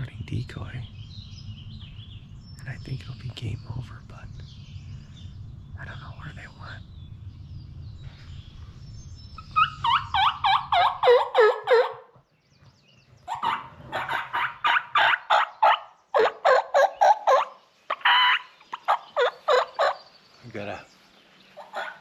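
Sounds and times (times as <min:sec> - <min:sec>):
low steady rumble: 0:00.0 - 0:11.0
turkey yelping: 0:09.5 - 0:12.1, 0:13.3 - 0:20.0, 0:21.6 - 0:22.0.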